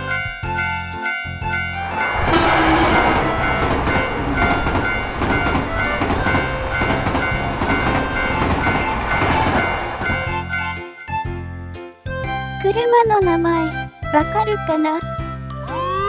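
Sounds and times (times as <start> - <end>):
crossing bell ringing: 0.0 - 11.7
train wheels clattering on rails: 1.9 - 11.0.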